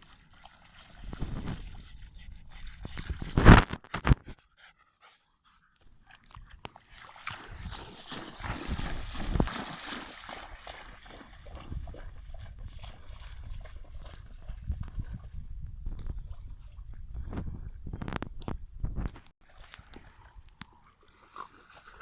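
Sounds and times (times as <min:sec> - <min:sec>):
dog panting and snuffling: 0:00.4 - 0:06.9.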